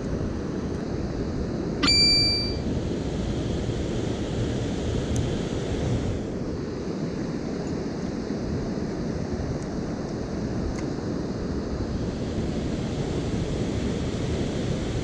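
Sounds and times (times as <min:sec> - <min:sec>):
sharp metallic ping: 0:01.8 - 0:02.6.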